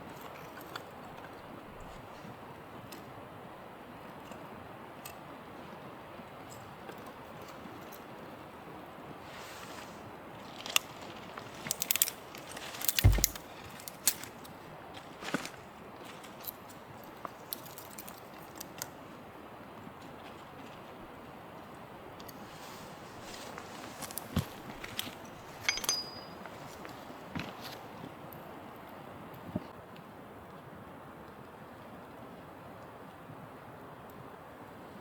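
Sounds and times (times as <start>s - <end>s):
background hiss: 0.0s - 29.7s
handling clicks and knocks: 10.6s - 18.9s, 22.2s - 27.8s
heavy thump: 13.0s - 13.4s.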